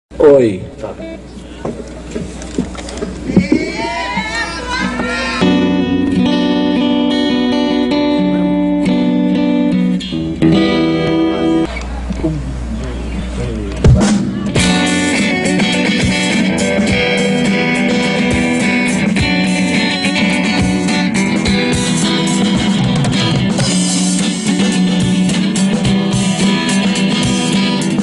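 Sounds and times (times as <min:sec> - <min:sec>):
plucked guitar: 0:02.5 - 0:28.0
drum kit beat: 0:04.8 - 0:11.5, 0:13.8 - 0:28.0.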